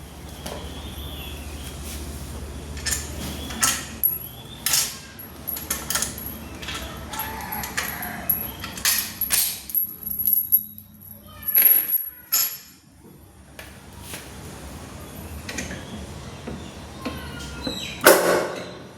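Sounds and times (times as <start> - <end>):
metal tools clinking and clattering: 2.8 - 12.8.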